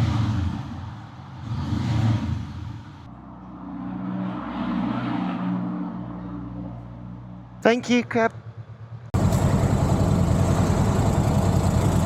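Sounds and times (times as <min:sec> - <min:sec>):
motorcycle engine running: 0:08.4 - 0:12.0.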